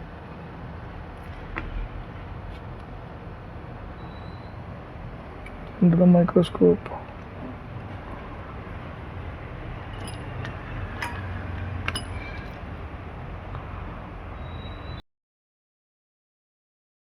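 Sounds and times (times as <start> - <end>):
small tools clinking on metal: 9.9 - 10.3, 11.9 - 12.6.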